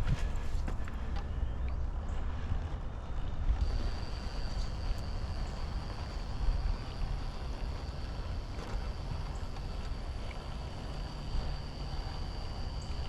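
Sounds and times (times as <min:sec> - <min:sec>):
wind rumbling on microphone: 0:00.0 - 0:13.0
high-pitched whine: 0:03.4 - 0:13.0.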